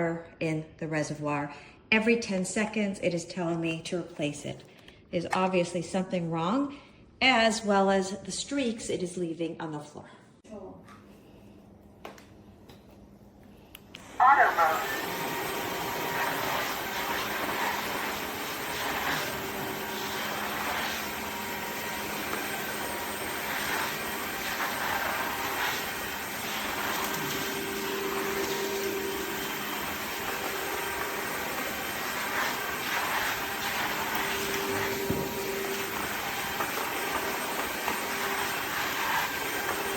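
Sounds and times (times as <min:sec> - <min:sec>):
vacuum mop motor hum: 0:14.0 - 0:39.9.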